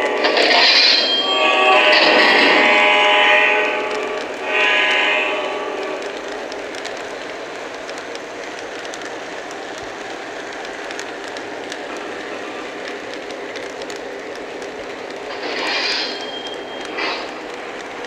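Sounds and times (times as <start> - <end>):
model train wheels rumbling: 0.0 - 18.0
faint clicks: 6.0 - 15.4.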